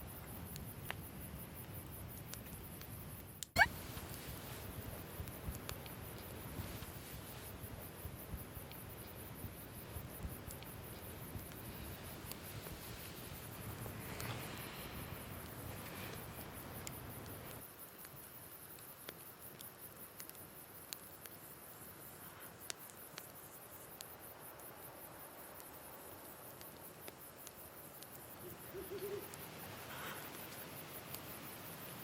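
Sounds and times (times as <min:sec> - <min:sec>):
campfire crackling: 0:00.0 - 0:32.0
crickets chirping: 0:00.0 - 0:32.0
owl hoot: 0:03.6 - 0:03.8, 0:28.4 - 0:30.2.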